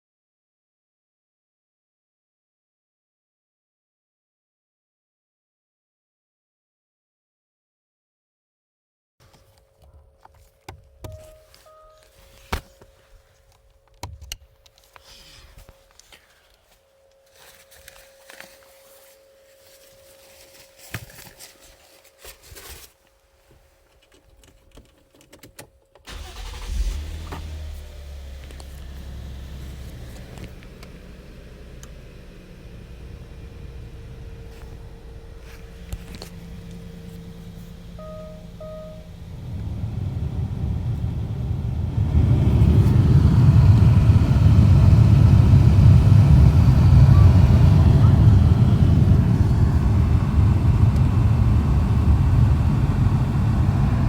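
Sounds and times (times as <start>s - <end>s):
faint steady tone: 10.9s - 14.0s, 30.8s - 41.9s
car engine idling: 26.1s - 54.0s
blower fan rushing air: 33.1s - 54.0s.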